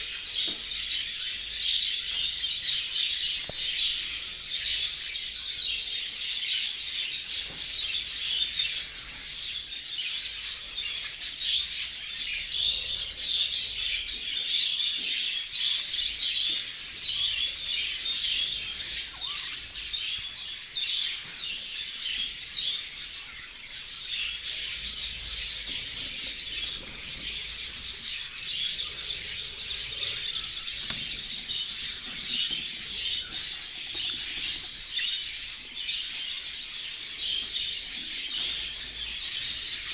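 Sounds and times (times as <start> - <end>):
budgerigars chattering: 9.6 - 39.9.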